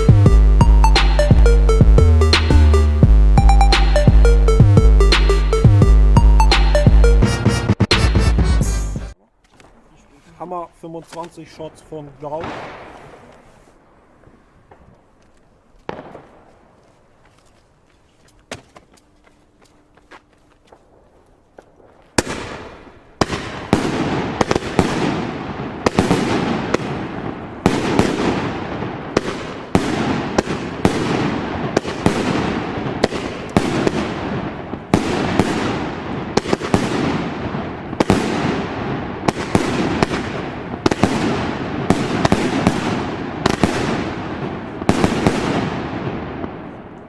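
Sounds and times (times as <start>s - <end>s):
fireworks bangs echoing: 11.1s - 13.5s, 15.9s - 16.7s, 21.8s - 47.0s.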